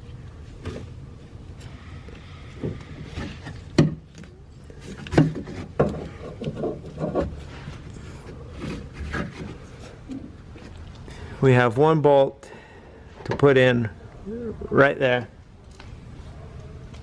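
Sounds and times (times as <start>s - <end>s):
rubber rubbing and scraping: 4.8s - 10.8s.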